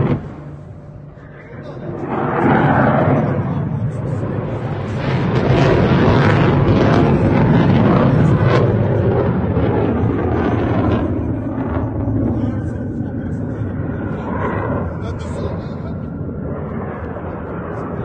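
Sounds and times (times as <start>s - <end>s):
explosion roaring and crackling: 0.0s - 0.6s, 1.8s - 11.4s.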